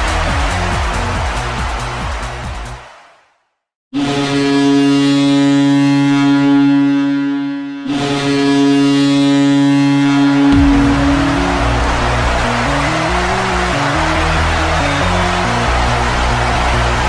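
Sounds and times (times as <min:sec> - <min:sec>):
music: 0:00.0 - 0:03.2, 0:10.6 - 0:17.0.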